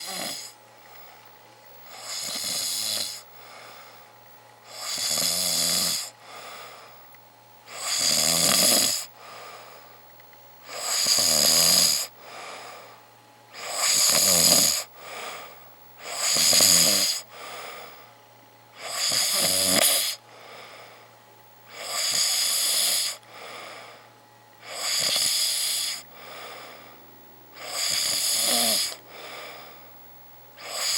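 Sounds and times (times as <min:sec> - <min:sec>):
person snoring loudly: 0:00.0 - 0:00.6, 0:01.9 - 0:03.8, 0:04.6 - 0:06.7, 0:07.7 - 0:09.5, 0:10.6 - 0:12.9, 0:13.6 - 0:17.9, 0:18.8 - 0:20.8, 0:21.7 - 0:24.0, 0:24.6 - 0:26.8, 0:27.6 - 0:29.8, 0:30.6 - 0:30.9.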